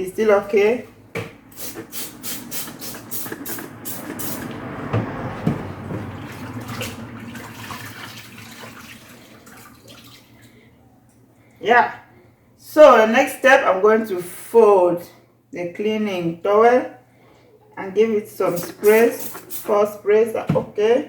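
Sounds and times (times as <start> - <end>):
water splashing and running: 1.8 - 10.5.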